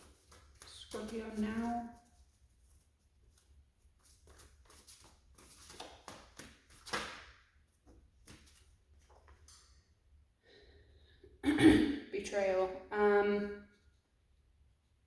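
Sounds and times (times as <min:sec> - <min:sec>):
cards being shuffled: 0:00.0 - 0:01.6, 0:04.0 - 0:09.3.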